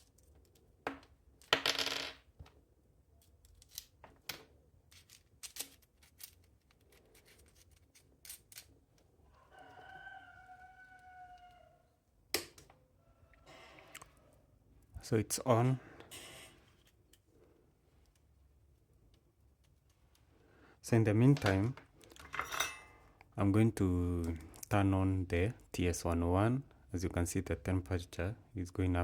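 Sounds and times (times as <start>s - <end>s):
rooster crowing: 9.2s - 12.0s.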